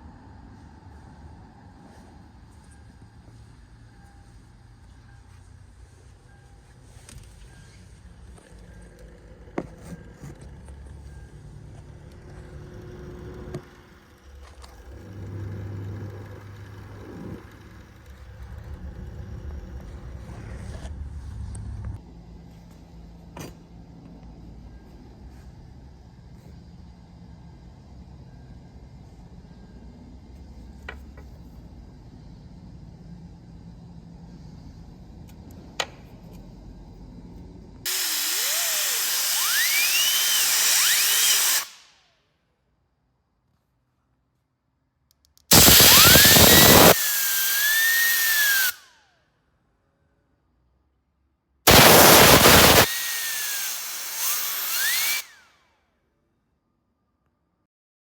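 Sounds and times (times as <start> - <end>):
moving vehicle rumble: 0.0 - 26.2.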